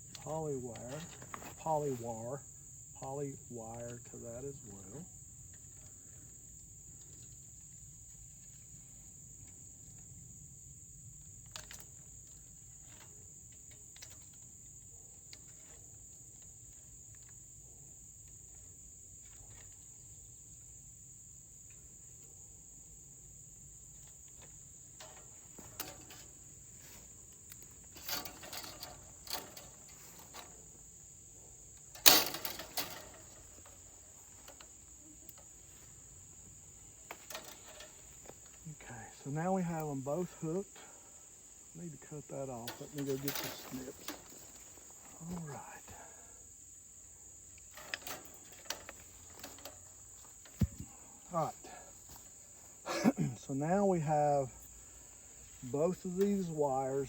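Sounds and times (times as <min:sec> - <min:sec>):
insects chirring: 0:00.0 - 0:57.0
fence wire clicking and rustling: 0:11.4 - 0:17.3, 0:24.0 - 0:30.8, 0:31.7 - 0:38.8, 0:42.5 - 0:45.5, 0:47.5 - 0:51.0.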